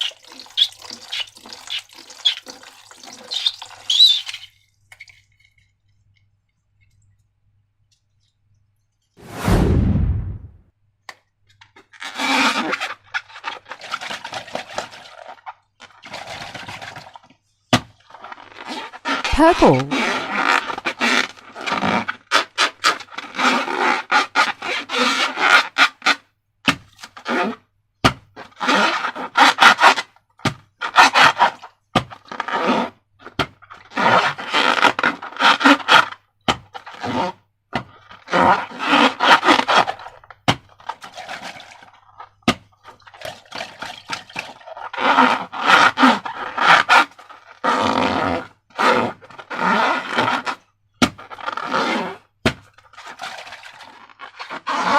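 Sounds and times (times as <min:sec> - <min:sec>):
slime squeezed by hand: 0:19.1 - 0:20.2.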